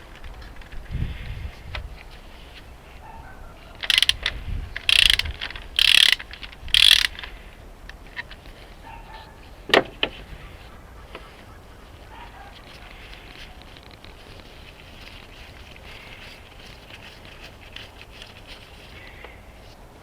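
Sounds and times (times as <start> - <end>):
ratchet wrench ratcheting: 3.8 - 7.3
sharp click: 3.8 - 7.3.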